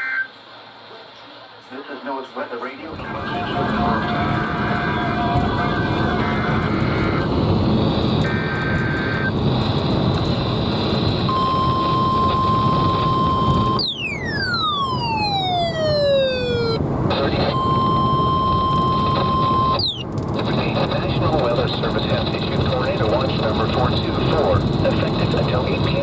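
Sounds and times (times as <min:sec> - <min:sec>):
steady rushing noise: 0:02.8 - 0:11.3
electronic tone sweeping down: 0:11.3 - 0:16.8, 0:17.4 - 0:20.1
short steady beeps: 0:11.3 - 0:16.8, 0:17.5 - 0:20.1
steady alarm tone: 0:11.3 - 0:16.8, 0:17.5 - 0:20.1.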